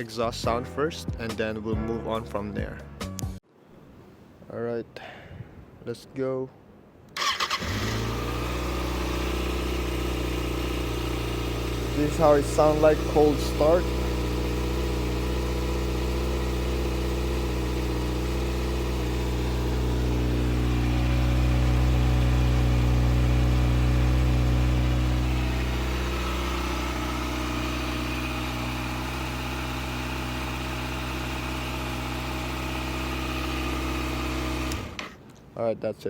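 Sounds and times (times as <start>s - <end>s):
motorcycle engine idling: 7.3s - 35.0s.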